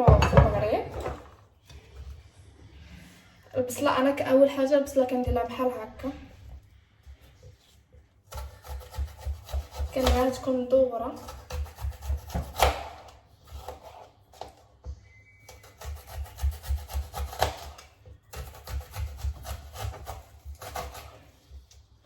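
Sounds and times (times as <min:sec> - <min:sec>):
knife slicing onion on board: 0:07.5 - 0:10.5, 0:11.2 - 0:14.6, 0:15.5 - 0:21.8.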